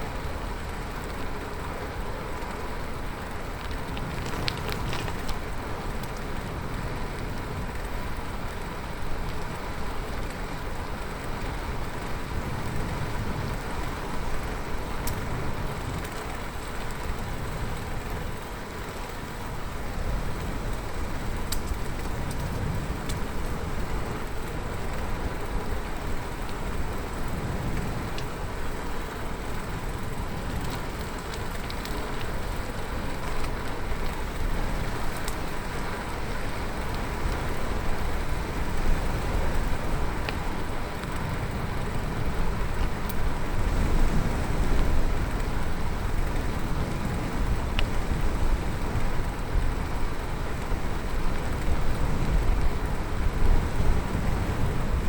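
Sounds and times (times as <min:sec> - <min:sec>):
bicycle tyres rolling on road: 0:00.0 - 0:55.0
wind rushing over microphones: 0:00.0 - 0:55.0
faint clicks: 0:03.6 - 0:06.5, 0:20.3 - 0:23.6.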